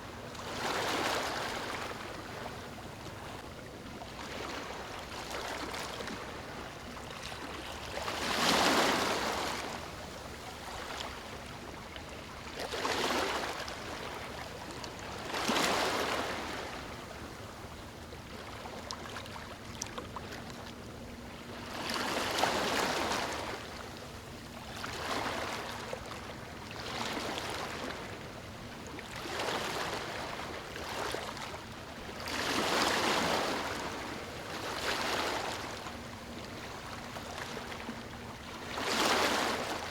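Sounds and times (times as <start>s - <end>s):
waves breaking on beach: 8.0s - 9.8s, 32.2s - 37.8s, 38.6s - 39.9s.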